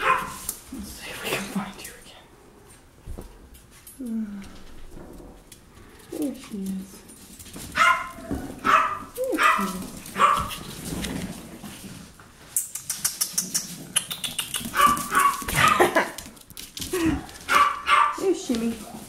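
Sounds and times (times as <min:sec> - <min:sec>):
puppies yipping: 0:07.8 - 0:10.6, 0:13.4 - 0:16.0.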